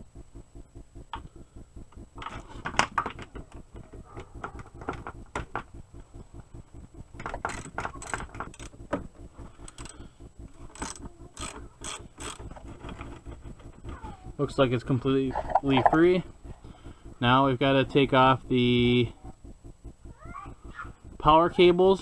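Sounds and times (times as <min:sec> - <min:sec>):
wrench clicking rapidly: 0:07.2 - 0:08.9, 0:09.6 - 0:14.0.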